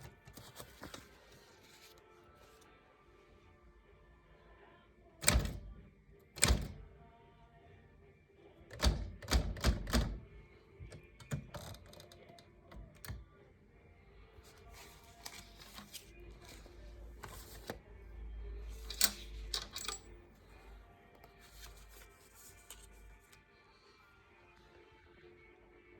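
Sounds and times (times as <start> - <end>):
typewriter keys striking: 8.8 - 10.2.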